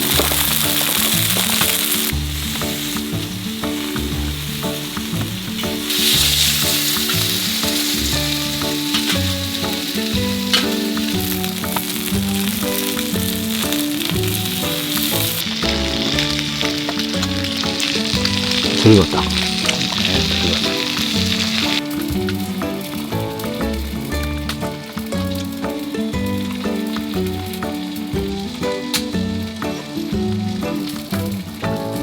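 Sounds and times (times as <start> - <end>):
continuous sizzle: 0.0 - 32.0
instrumental music with bass line: 0.0 - 32.0.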